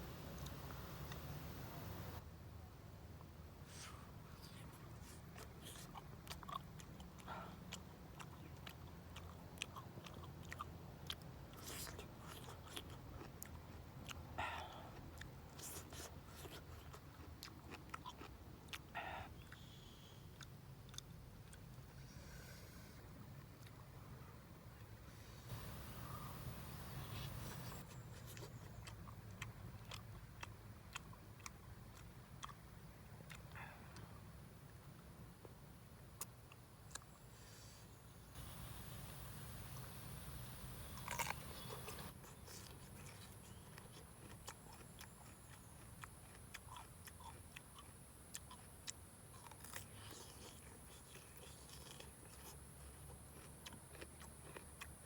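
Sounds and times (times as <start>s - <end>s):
low steady hum: 0.0s - 7.6s, 18.6s - 49.3s
person chewing crunchy food: 4.4s - 19.8s, 25.5s - 32.6s, 38.4s - 55.0s
low hum: 25.2s - 27.8s, 38.4s - 42.1s.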